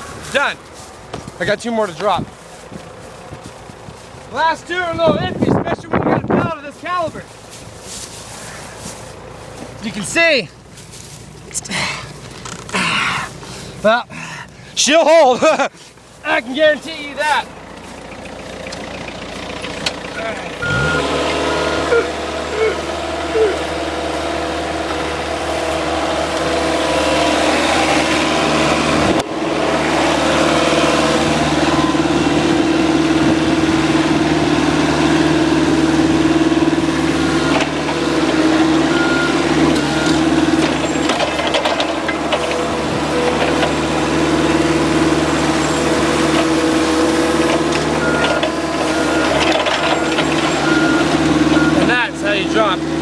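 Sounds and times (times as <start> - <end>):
forklift engine running: 0.0 - 53.0
short beeps: 20.6 - 22.1, 38.9 - 40.2.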